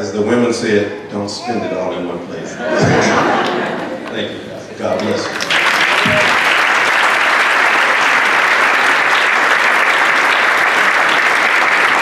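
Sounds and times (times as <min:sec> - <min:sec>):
congregation applauding: 0:03.4 - 0:12.0.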